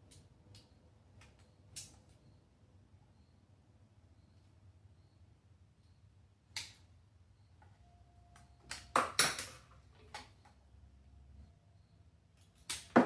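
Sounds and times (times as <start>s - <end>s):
low steady hum: 0.0s - 12.9s.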